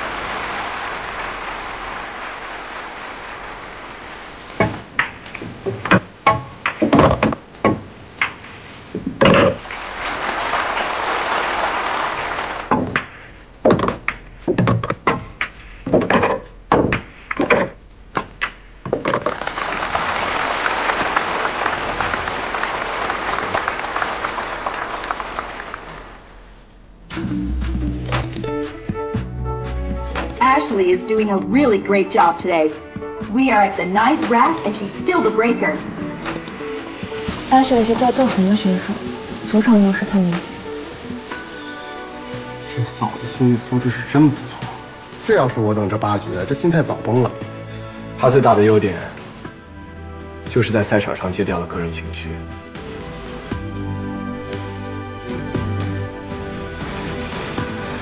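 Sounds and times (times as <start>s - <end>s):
audience applauding: 0.0s - 4.4s, 9.6s - 13.0s, 19.1s - 26.4s
billiard balls clacking: 4.5s - 10.8s, 12.6s - 19.8s
cue striking ball: 4.6s - 9.6s, 12.7s - 19.4s.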